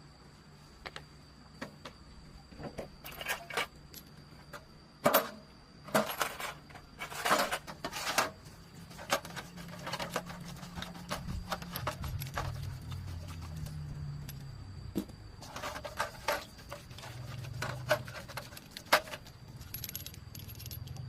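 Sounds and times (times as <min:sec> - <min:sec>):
metal tools clinking and knocking: 0:02.8 - 0:04.2, 0:05.1 - 0:08.3, 0:15.4 - 0:21.0
metal scraping: 0:15.4 - 0:20.5.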